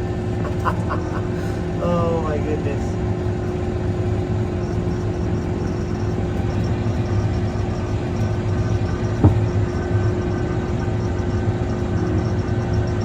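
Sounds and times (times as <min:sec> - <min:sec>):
tractor engine running: 0:00.0 - 0:13.0
knock: 0:09.2 - 0:09.5.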